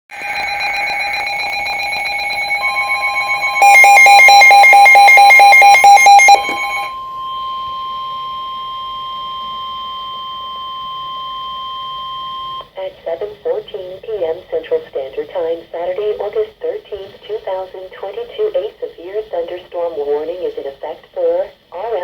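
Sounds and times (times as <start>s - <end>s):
electronic alarm beeping: 0.1s - 12.6s
steady single-pitched warning tone: 0.1s - 12.7s.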